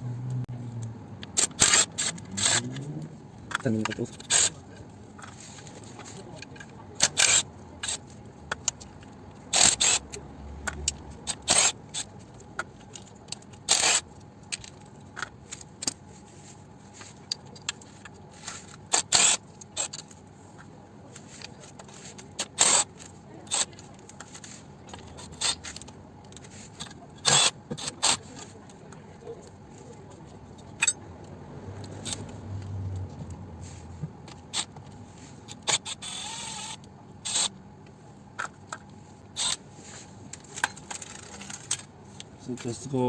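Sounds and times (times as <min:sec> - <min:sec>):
metallic clicks of hand tools: 0:00.3 - 0:04.6, 0:06.5 - 0:16.0.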